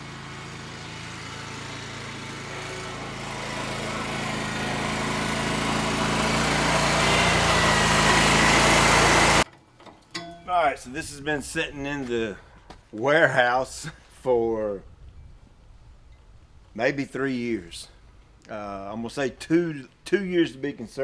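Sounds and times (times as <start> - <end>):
lawn mower engine running: 0.0 - 11.7.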